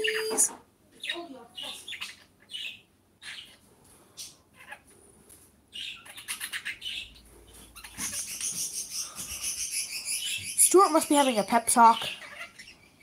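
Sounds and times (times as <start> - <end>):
budgerigars chirping: 1.0 - 3.6, 5.7 - 13.0.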